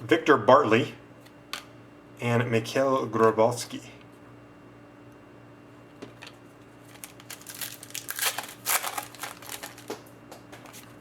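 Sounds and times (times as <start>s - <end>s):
packaging crinkling and rustling: 6.0s - 11.0s.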